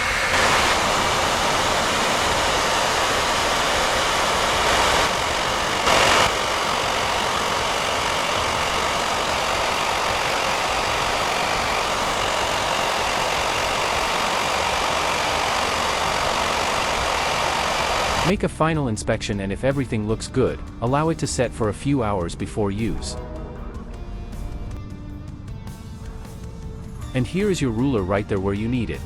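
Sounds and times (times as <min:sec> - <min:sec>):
electric air blower running: 0:00.0 - 0:18.3.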